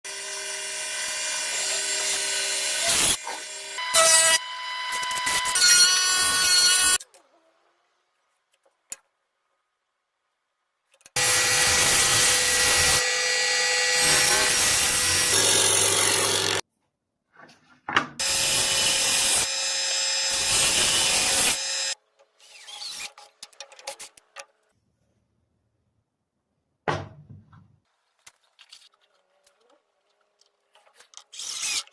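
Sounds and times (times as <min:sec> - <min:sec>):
electric power tool cutting wood: 0:00.1 - 0:07.0, 0:11.2 - 0:16.6, 0:18.2 - 0:22.0.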